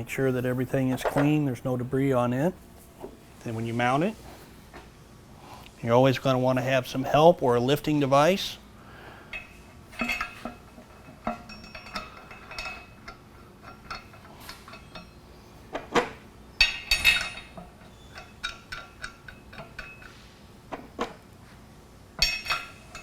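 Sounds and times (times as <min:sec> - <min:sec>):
metal parts clinking and clanking: 0:09.3 - 0:21.3, 0:22.2 - 0:23.0.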